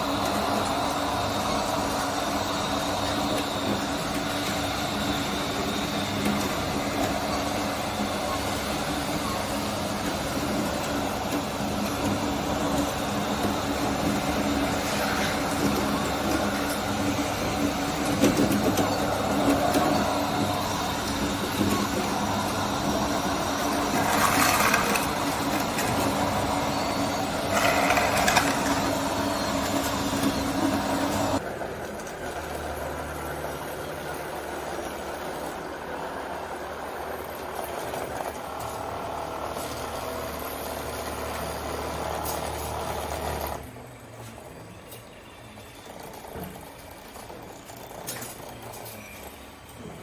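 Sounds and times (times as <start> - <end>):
toy machine motor hum: 1.3 - 31.4.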